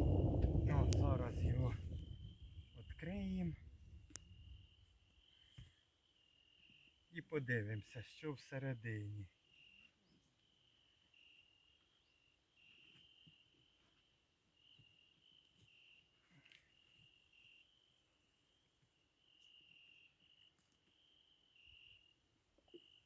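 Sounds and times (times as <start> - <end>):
faint clicks: 0.0 - 2.2, 4.0 - 4.3
crickets chirping: 0.0 - 23.0.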